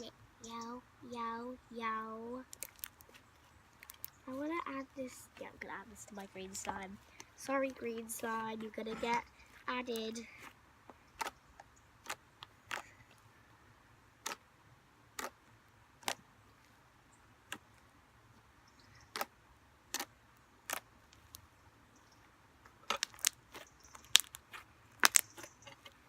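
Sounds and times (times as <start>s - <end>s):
slime clicking and snapping: 2.5s - 3.1s, 22.9s - 24.4s, 25.0s - 25.4s.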